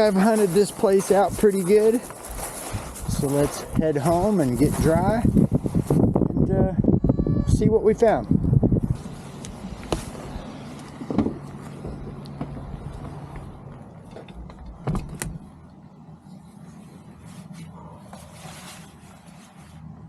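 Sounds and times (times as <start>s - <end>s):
vehicle engine idling: 9.0s - 19.2s.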